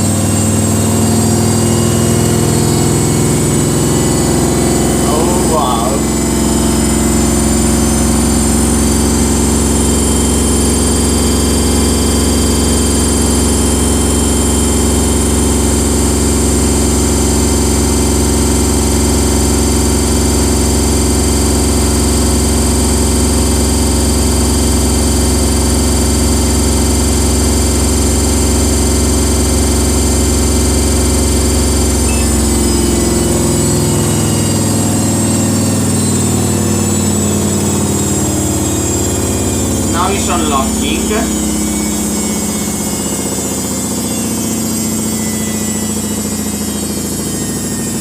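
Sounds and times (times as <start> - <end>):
washing machine motor hum: 0.0 - 17.3, 28.3 - 36.4, 37.1 - 43.2.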